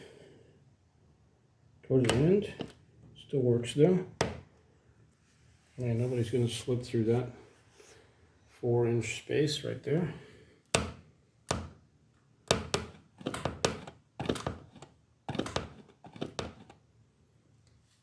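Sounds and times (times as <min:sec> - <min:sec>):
door knocking against stopper: 0:12.5 - 0:16.7.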